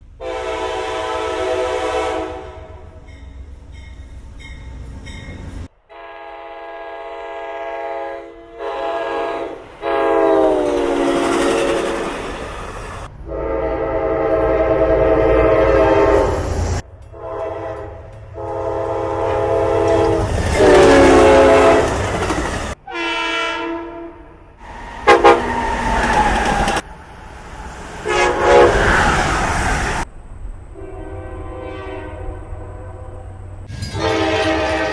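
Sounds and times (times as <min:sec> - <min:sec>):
train rumble and clatter: 0:00.0 - 0:05.8, 0:08.4 - 0:22.8, 0:24.3 - 0:34.9
locomotive air horn blasts: 0:00.2 - 0:03.0, 0:05.8 - 0:12.2, 0:13.2 - 0:26.0, 0:28.0 - 0:29.2, 0:30.8 - 0:34.9.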